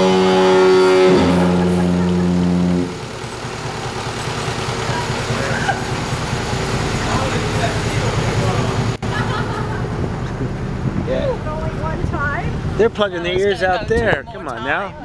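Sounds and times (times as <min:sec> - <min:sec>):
two-tone foghorn blast: 0:00.0 - 0:03.8.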